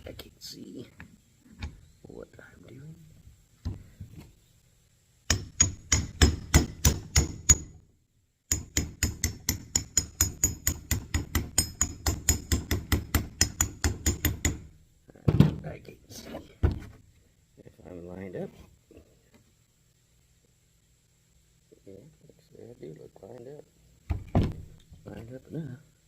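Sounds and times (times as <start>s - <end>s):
hammer tapping on metal: 5.3s - 7.8s, 8.5s - 14.7s.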